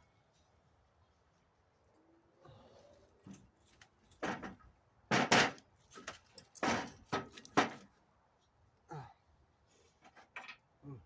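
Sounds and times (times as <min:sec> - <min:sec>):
metal parts and tools clunking: 0:03.2 - 0:07.9, 0:10.0 - 0:10.7.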